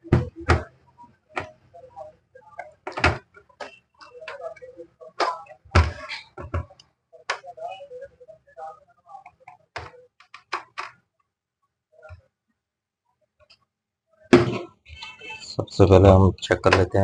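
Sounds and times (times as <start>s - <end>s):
plastic parts clicking and knocking: 2.6s - 4.6s, 9.2s - 11.3s.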